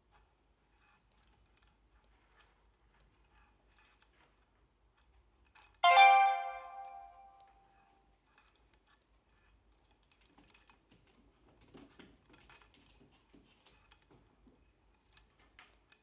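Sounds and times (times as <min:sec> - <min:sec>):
loud bell-like ring: 0:05.8 - 0:07.2.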